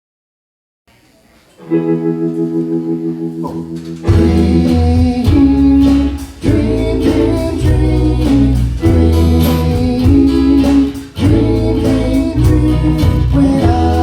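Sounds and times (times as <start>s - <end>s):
bass and drums: 3.5s - 14.0s.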